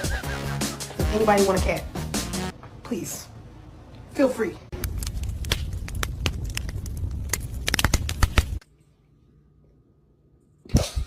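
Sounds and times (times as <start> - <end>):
low rumble: 4.7 - 8.6.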